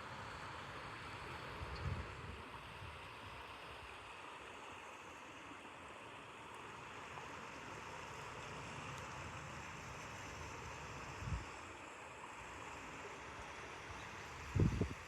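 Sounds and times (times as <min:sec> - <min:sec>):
river water flowing: 0:00.0 - 0:15.0
wind rumble on microphone: 0:01.6 - 0:03.0, 0:11.1 - 0:11.5, 0:14.4 - 0:15.0.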